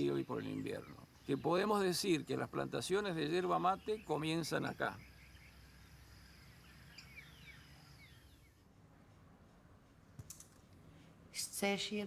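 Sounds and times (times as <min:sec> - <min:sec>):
soft bird chirps: 0:00.0 - 0:08.6.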